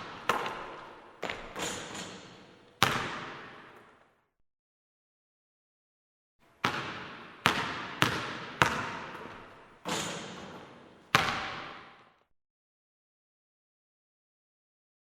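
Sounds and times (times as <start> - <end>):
basketball bouncing on hard court: 0.0 - 4.0, 6.6 - 12.1.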